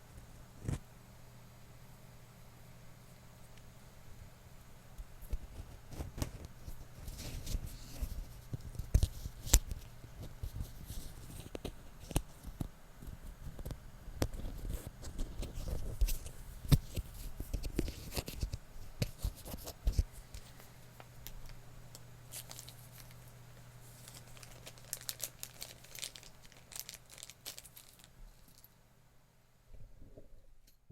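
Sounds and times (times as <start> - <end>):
faint low hum: 0.0 - 30.9
material crinkling and crackling: 5.2 - 28.8.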